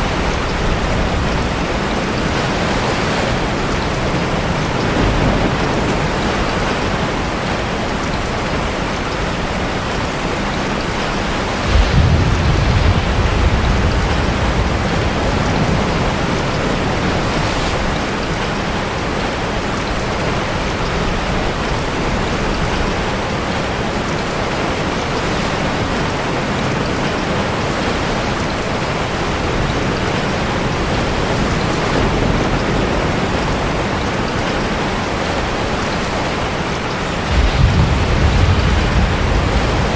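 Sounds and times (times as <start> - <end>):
heavy rain: 0.0 - 39.9
sea surf: 0.0 - 39.9
deep rumble: 11.5 - 16.8, 37.0 - 39.9.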